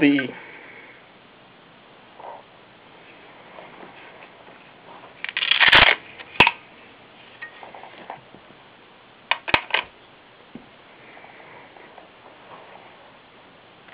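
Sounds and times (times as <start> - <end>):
velcro strap ripping: 5.2 - 6.6.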